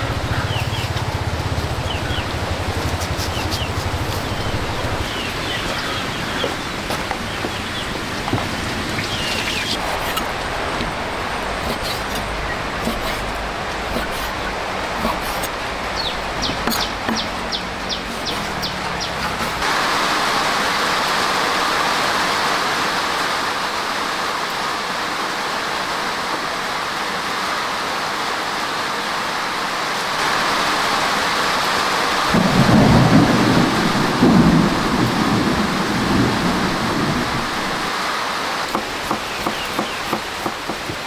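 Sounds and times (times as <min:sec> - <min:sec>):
low thunder rumble: 0:00.0 - 0:14.9, 0:32.3 - 0:37.9
heavy rain falling: 0:00.0 - 0:41.0.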